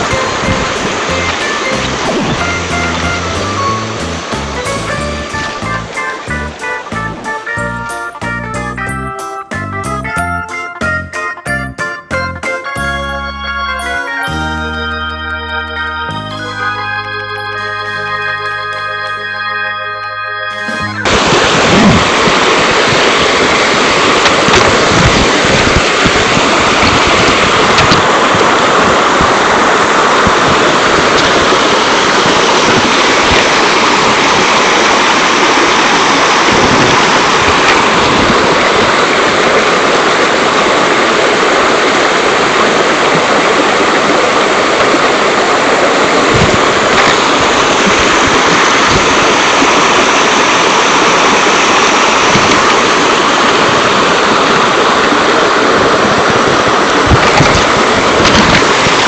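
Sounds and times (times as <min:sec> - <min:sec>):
stream rushing over rocks: 0:00.0 - 0:07.6, 0:20.6 - 0:59.0.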